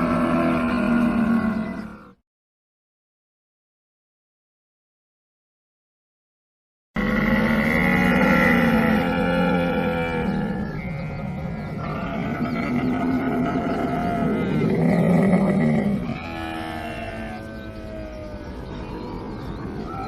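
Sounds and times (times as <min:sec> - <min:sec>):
camel groaning call: 0:00.0 - 0:02.2, 0:07.0 - 0:20.0.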